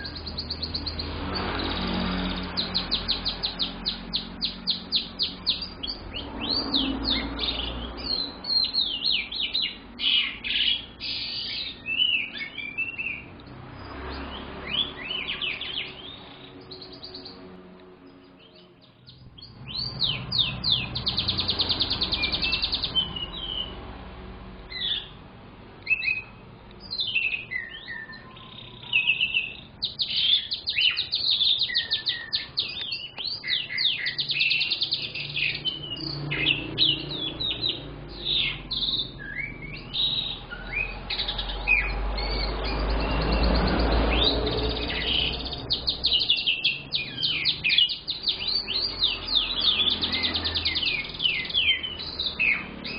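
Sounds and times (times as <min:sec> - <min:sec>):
canary singing trills: 0:00.0 - 0:52.9
low rumble: 0:19.2 - 0:24.8.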